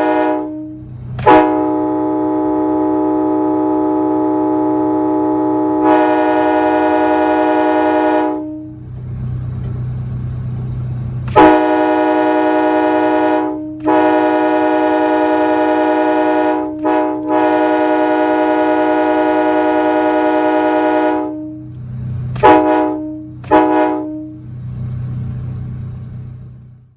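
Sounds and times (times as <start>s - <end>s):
train horn chord blasts: 0.0s - 8.9s, 11.3s - 24.5s.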